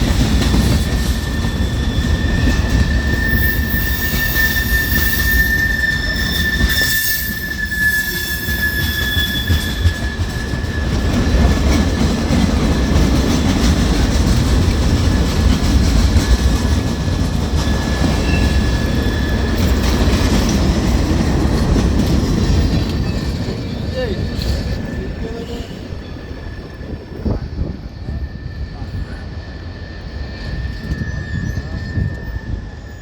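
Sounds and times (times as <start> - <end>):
train rumbling on rails: 0.0 - 33.0
high wheel squeal: 0.4 - 13.7, 15.0 - 20.4, 22.4 - 33.0.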